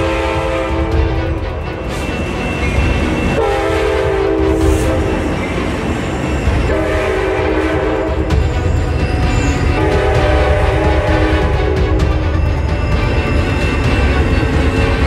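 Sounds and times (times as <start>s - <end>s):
train horn blasts: 0.0s - 1.4s, 3.3s - 5.4s, 6.6s - 12.3s
moving train rumble: 0.0s - 15.0s.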